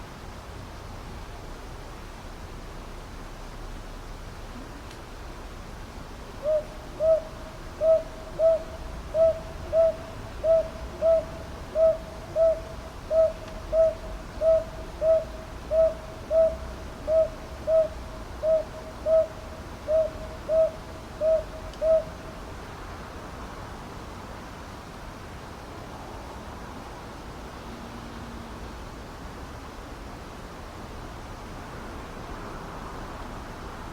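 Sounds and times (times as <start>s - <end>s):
owl calling two-note hoots: 6.4s - 22.2s.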